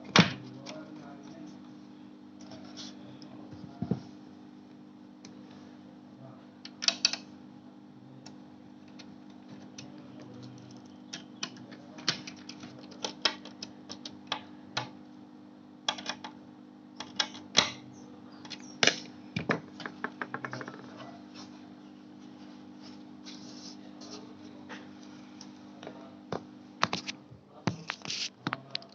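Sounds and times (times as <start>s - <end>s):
steady low hum: 0.0s - 28.9s
clicks and taps on computer parts: 6.7s - 7.3s, 11.1s - 15.0s, 15.9s - 16.4s, 17.0s - 17.8s.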